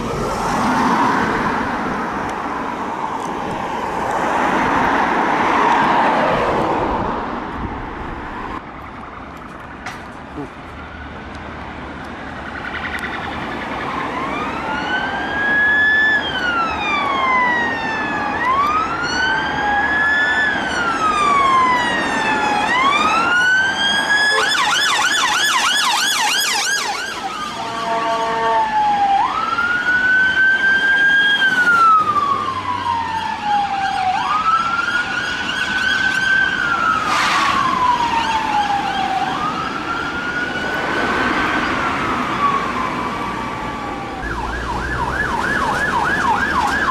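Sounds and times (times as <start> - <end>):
road noise: 0.0 - 46.9
emergency vehicle siren: 12.3 - 46.9.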